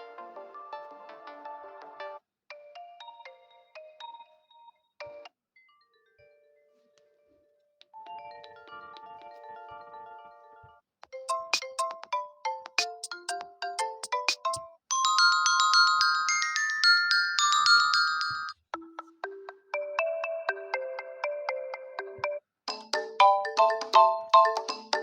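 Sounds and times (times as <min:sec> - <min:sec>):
phone ringtone tunes: 0:00.0 - 0:06.8, 0:08.0 - 0:22.4, 0:23.2 - 0:25.0.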